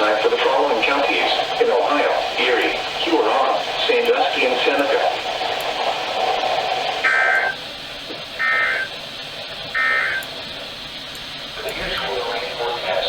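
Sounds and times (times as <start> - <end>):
steady radio noise: 0.0 - 13.0
digital data tone bursts: 7.0 - 7.6, 8.4 - 8.9, 9.7 - 10.3.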